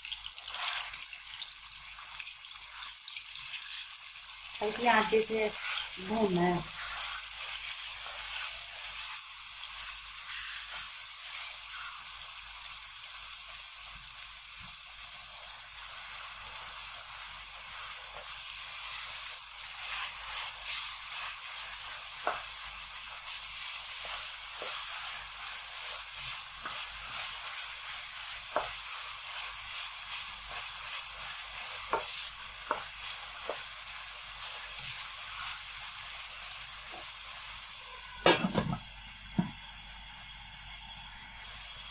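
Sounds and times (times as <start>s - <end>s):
meat sizzling in oil: 0.0s - 41.9s
spoon scraping pan: 5.4s - 9.2s, 23.2s - 33.7s.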